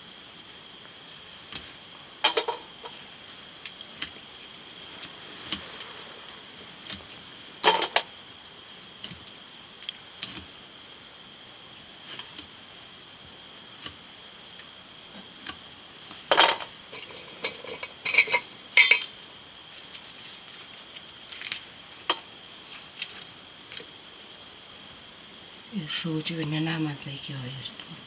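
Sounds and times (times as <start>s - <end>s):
metal dishes clinking and clattering: 2.2s - 2.6s, 16.3s - 19.2s.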